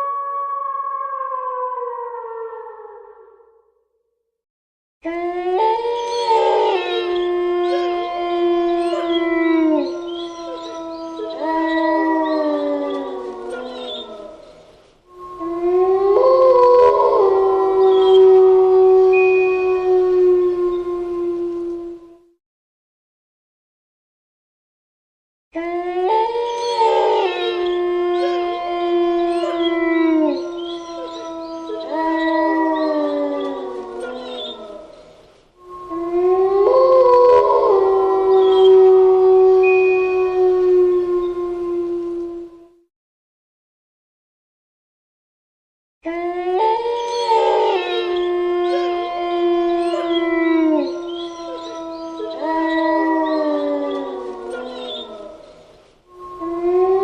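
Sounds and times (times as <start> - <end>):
wolves howling in chorus: 5.1 - 22.2, 25.6 - 42.7, 46.1 - 57.0.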